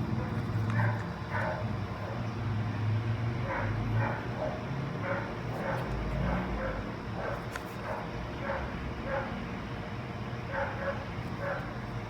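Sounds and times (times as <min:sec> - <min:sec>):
steady low hum: 0:00.0 - 0:12.0
dog barking: 0:00.2 - 0:02.2, 0:03.4 - 0:09.4, 0:10.5 - 0:11.8.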